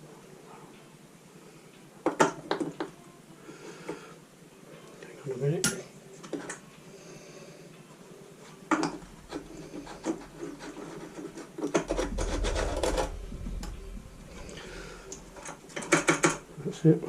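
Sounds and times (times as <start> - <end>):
rattling rasp: 9.3 - 13.8.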